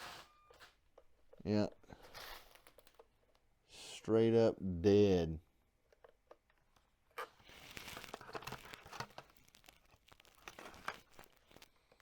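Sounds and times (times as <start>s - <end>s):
faint rustling and crackling: 6.7s - 12.0s.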